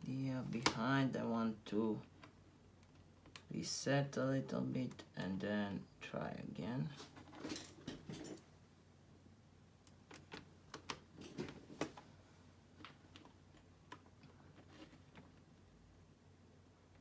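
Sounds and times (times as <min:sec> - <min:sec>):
soft rustle: 0:11.2 - 0:15.7.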